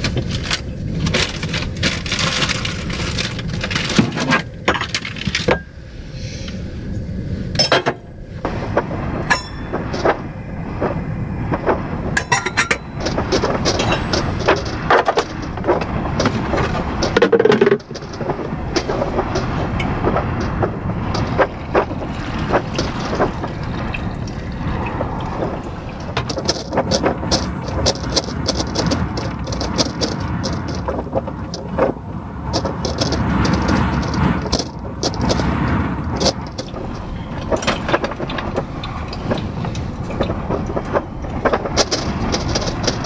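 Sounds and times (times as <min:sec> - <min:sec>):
small items clinking: 0:00.0 - 0:05.8, 0:08.5 - 0:31.7
storm wind buffeting van: 0:00.0 - 0:43.0.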